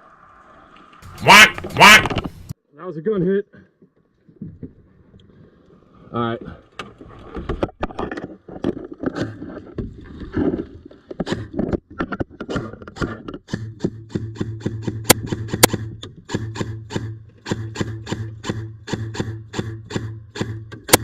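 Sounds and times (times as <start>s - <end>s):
background music with bass: 1.0s - 2.5s.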